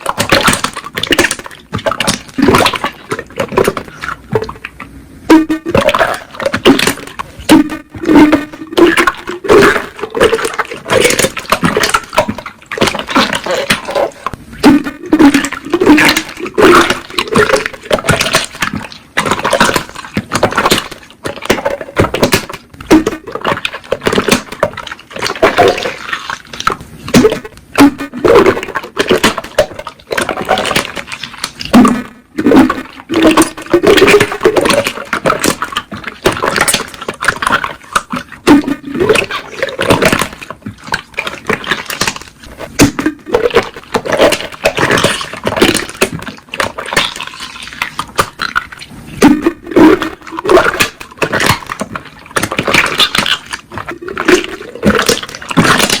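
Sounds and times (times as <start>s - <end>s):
air bubbles popping: 0.0s - 56.0s
slime squelching: 0.0s - 56.0s.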